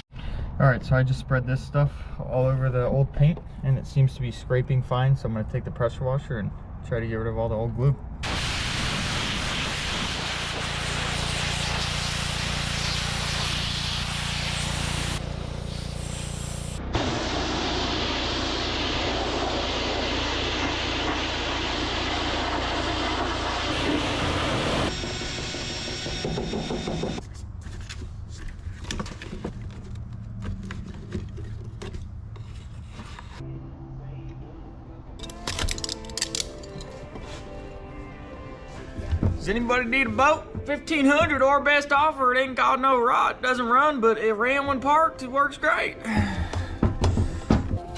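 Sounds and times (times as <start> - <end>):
water jet hissing: 8.2 - 25.0
pressure washer motor hum: 8.2 - 27.2.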